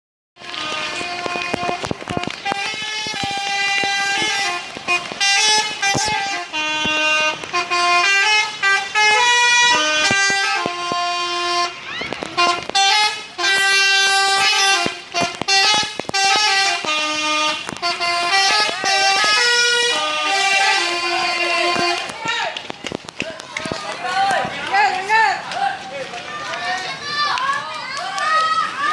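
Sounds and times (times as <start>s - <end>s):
multi-tone air horn melody: 0.4s - 22.3s.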